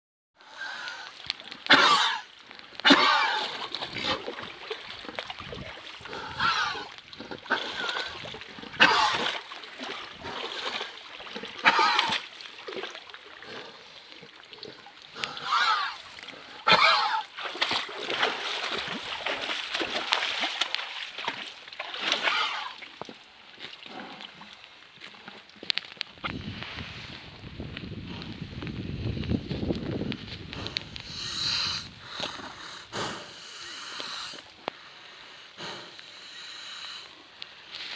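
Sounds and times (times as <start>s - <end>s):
rough breathing: 0.4s - 12.2s, 30.3s - 37.9s
animal coughing: 1.6s - 3.6s, 6.1s - 9.4s, 11.6s - 12.2s, 16.6s - 17.3s.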